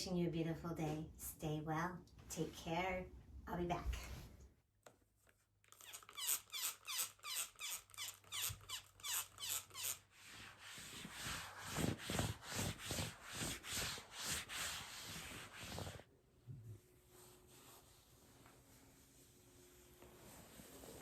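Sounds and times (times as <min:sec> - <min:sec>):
skin rubbing against vinyl: 0:05.8 - 0:16.1.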